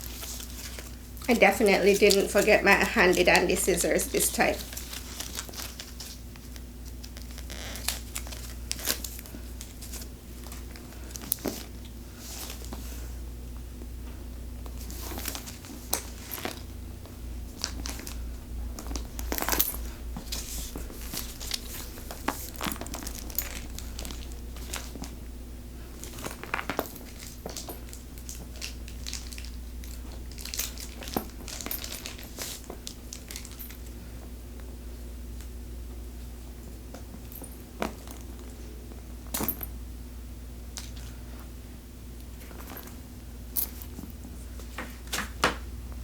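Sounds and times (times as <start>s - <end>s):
wrapping paper crinkling: 0.0s - 13.0s, 17.5s - 25.2s, 25.9s - 33.9s
faint low hum: 0.0s - 46.0s.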